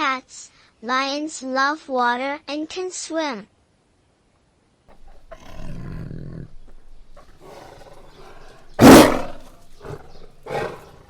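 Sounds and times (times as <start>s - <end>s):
big cat growling and roaring: 4.9s - 11.0s.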